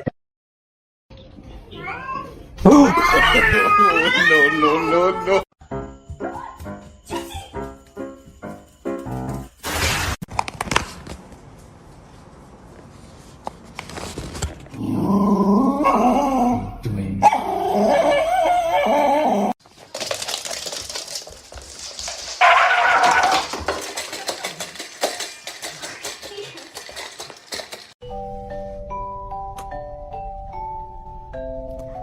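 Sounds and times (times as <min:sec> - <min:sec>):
dog howling: 0:15.5 - 0:19.6.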